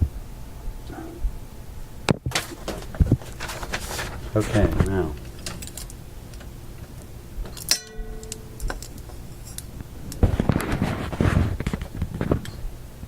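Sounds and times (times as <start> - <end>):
faint low hum: 0.0 - 13.0
rustling and clatter: 2.1 - 7.7, 8.7 - 12.6.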